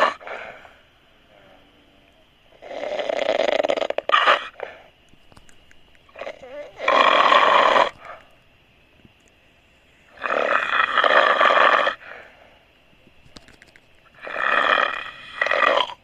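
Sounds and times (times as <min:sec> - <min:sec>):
snort: 0:00.0 - 0:01.6, 0:02.6 - 0:04.9, 0:06.2 - 0:08.2, 0:10.1 - 0:12.5, 0:14.2 - 0:16.0
person snoring harshly: 0:02.6 - 0:04.5, 0:06.2 - 0:07.9, 0:10.2 - 0:12.0, 0:14.2 - 0:16.0.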